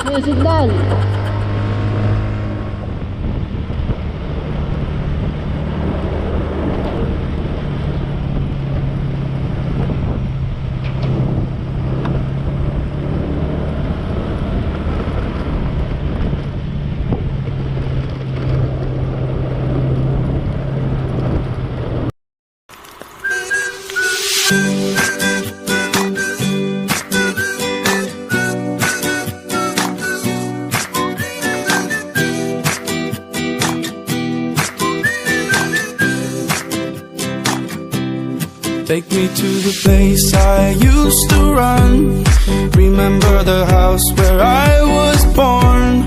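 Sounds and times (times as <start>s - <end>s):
motorcycle engine cruising: 0.0s - 22.1s, 22.7s - 46.0s
wind rush on microphone: 0.6s - 22.1s.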